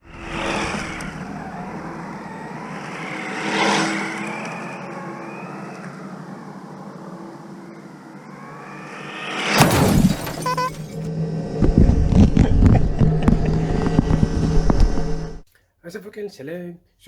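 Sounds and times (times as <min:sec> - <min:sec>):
electric motor whining: 0:00.0 - 0:15.4
tyre and ground noise: 0:09.6 - 0:15.4.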